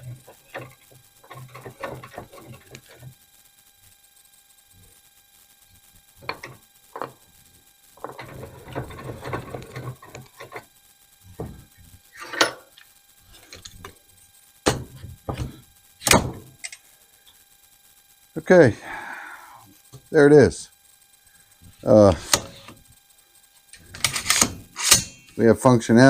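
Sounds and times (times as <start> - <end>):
metal clicks and scraping: 0.0 - 3.2, 6.2 - 7.2, 8.0 - 10.7, 11.4 - 14.0, 23.7 - 25.4.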